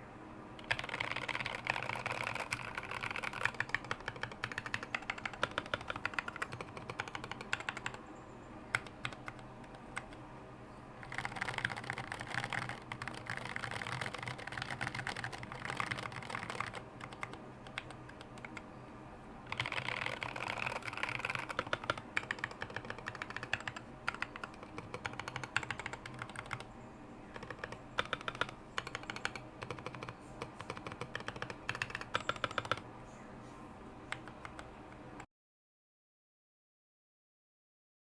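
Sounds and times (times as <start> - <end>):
typing on mechanical keyboard: 0.6 - 8.0, 8.7 - 10.2, 11.0 - 18.6, 19.5 - 26.7, 27.3 - 32.8, 34.1 - 35.2.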